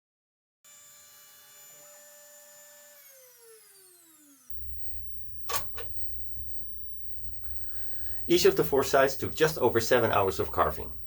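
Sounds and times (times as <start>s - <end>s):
router motor whining: 0.7s - 8.3s
low hum: 4.5s - 11.0s
sharp click: 4.9s - 6.0s.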